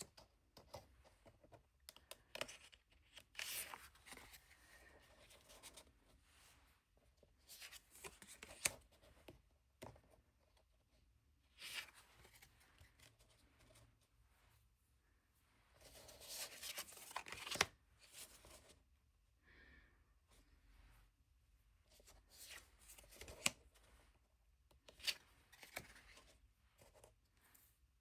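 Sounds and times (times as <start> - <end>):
cards sliding and rustling: 0.6 - 6.0, 7.5 - 9.1, 11.5 - 13.8, 15.8 - 18.7, 21.9 - 23.8, 24.8 - 27.1.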